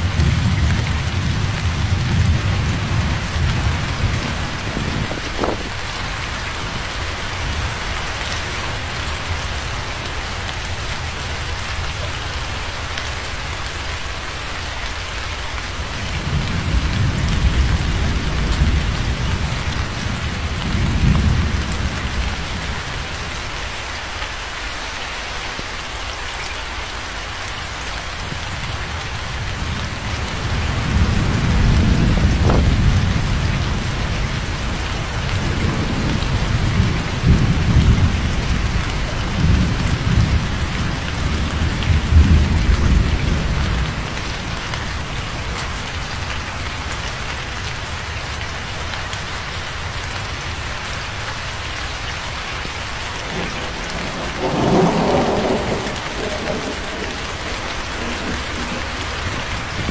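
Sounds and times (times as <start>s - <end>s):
thunder rumbling: 0.0s - 9.7s, 15.9s - 23.1s, 29.3s - 45.0s, 52.7s - 59.9s
steady rain falling: 0.0s - 59.9s.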